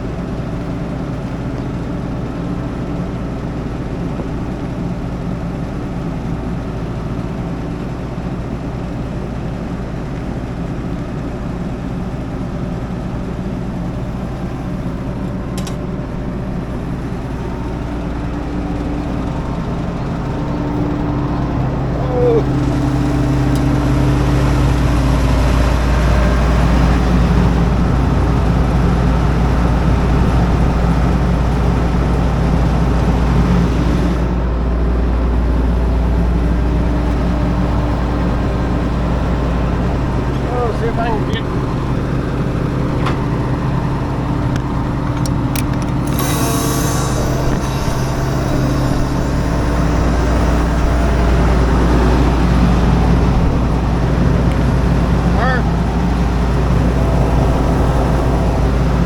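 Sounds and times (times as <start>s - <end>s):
large engine humming: 0.0s - 59.0s
machinery noise: 13.7s - 59.0s.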